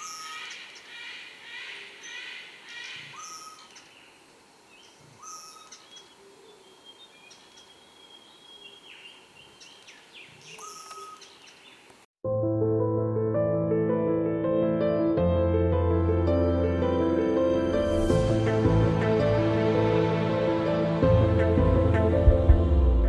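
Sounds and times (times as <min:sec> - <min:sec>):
short bird calls: 0:00.0 - 0:04.2, 0:04.8 - 0:11.9
birds chattering: 0:00.0 - 0:12.0.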